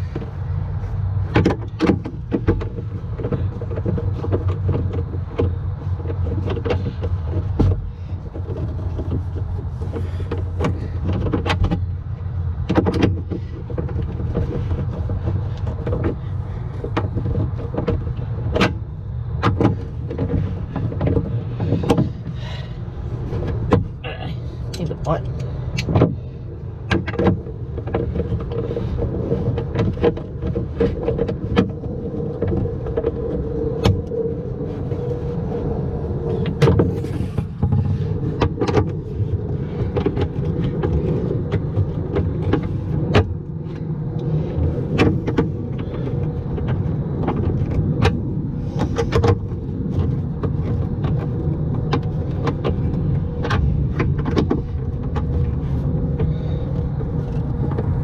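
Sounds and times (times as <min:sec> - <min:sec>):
low mechanical hum: 0:00.0 - 0:58.0
hand tool clicks and knocks: 0:24.7 - 0:26.2.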